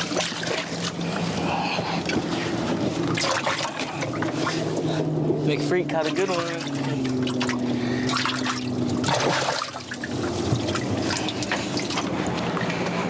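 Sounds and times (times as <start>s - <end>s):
low hum: 0.0s - 13.0s
water splashing and dripping: 3.0s - 4.9s, 5.8s - 12.5s.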